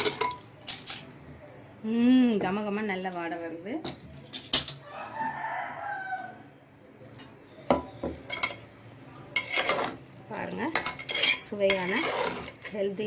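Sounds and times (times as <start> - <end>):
metal pots and utensils clanking: 0.0 - 1.0, 3.8 - 4.8, 7.1 - 13.0
rooster crowing: 4.8 - 6.6.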